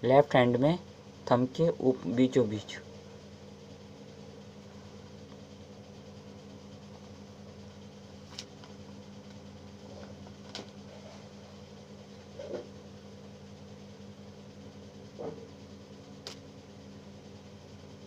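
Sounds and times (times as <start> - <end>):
fan humming: 0.0 - 18.0
small sharp clicks: 16.2 - 16.4.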